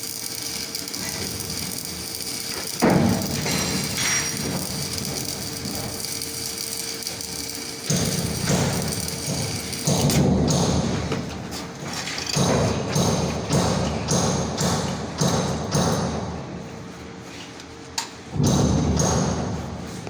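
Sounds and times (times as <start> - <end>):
welding arc crackling: 0.0 - 10.6.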